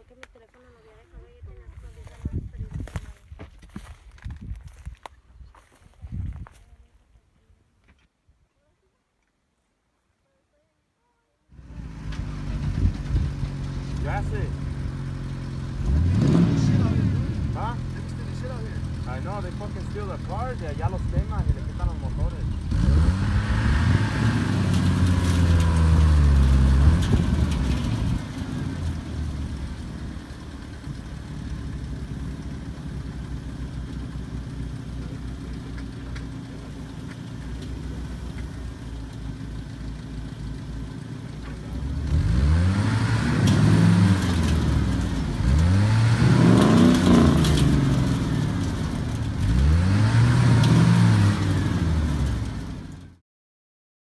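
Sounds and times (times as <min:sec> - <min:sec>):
truck engine revving: 0:11.6 - 0:53.2.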